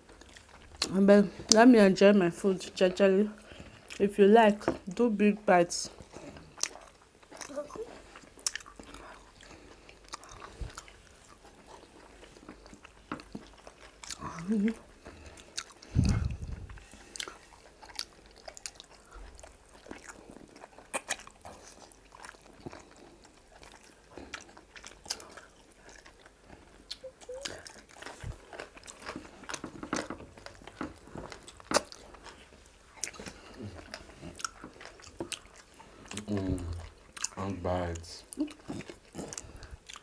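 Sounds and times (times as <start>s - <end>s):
chewing and mouth noises: 0.0s - 1.7s, 3.3s - 4.8s, 5.9s - 40.0s
mouth clicks and smacks: 15.5s - 17.3s.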